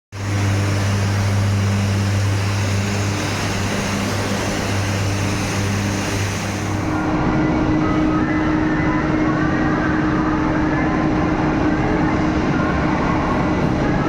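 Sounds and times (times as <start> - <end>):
rushing noise from arcs: 0.1 - 7.2
furnace deep hum: 0.1 - 14.0.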